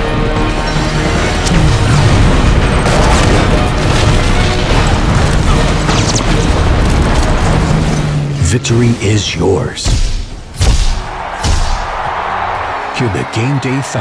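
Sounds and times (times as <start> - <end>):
video game music: 0.0 - 14.0
rumbling booms and blasts: 1.2 - 11.9.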